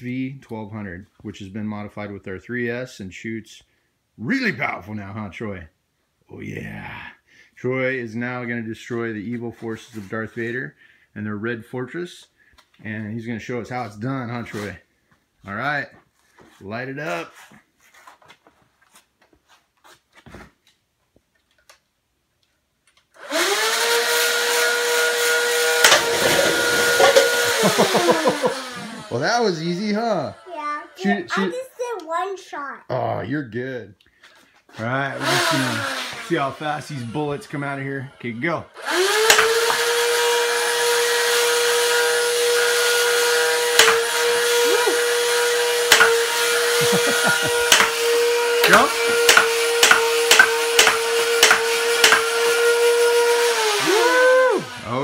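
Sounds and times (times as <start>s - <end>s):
blaster flywheel motors whining: 23.2s - 31.3s, 35.2s - 38.1s, 38.8s - 55.0s.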